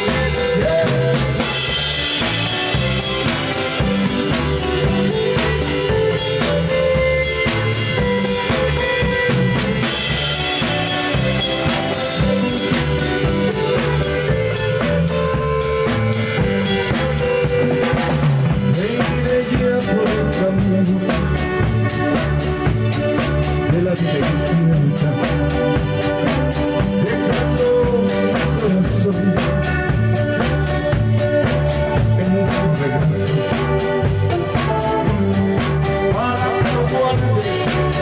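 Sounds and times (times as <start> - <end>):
drum fill: 0.0 - 38.0
live band playing: 0.0 - 38.0.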